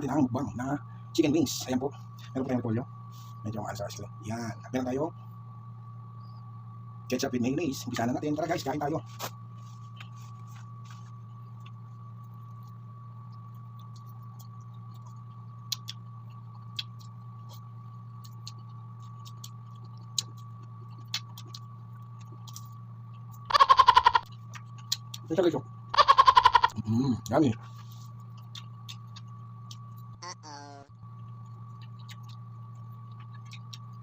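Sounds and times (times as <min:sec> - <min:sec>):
faint high whine: 0:00.0 - 0:24.3
low electrical hum: 0:00.0 - 0:34.0
chewing clicks and smacks: 0:11.4 - 0:25.3, 0:28.2 - 0:30.2, 0:31.0 - 0:34.0.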